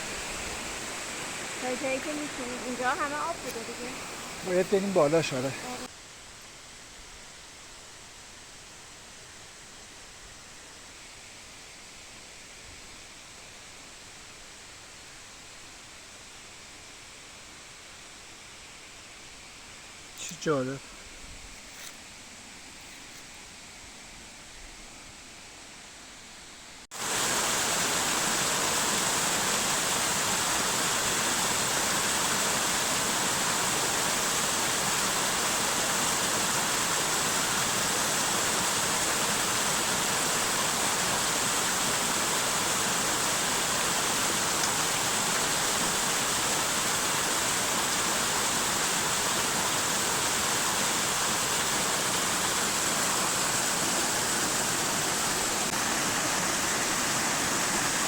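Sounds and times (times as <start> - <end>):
waterfall rushing: 0.0 - 5.9, 26.9 - 58.0.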